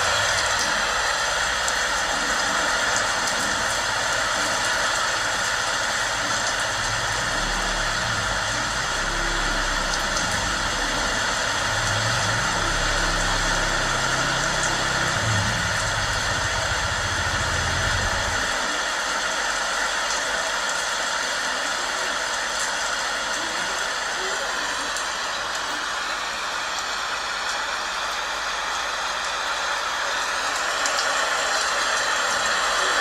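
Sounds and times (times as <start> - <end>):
heavy rain falling: 0.0 - 33.0
low rumble: 6.9 - 18.6.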